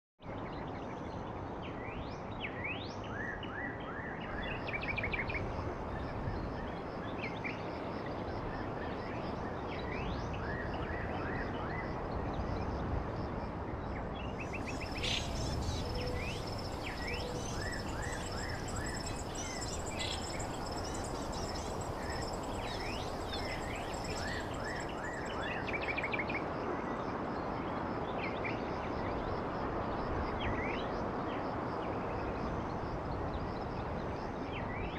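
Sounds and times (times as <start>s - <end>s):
outdoor background hiss: 4.2s - 34.9s
small birds chirping: 14.4s - 25.6s.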